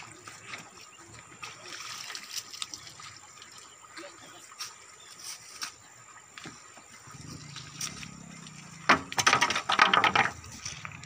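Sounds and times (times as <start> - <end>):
wooden cart rattling and knocking: 8.7 - 11.0.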